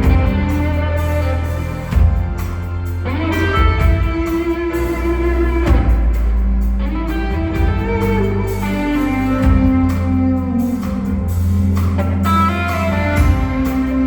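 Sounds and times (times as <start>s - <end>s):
bass guitar: 0.0s - 14.0s
drums with cymbals: 0.0s - 14.0s
electric guitar held notes: 0.0s - 14.0s.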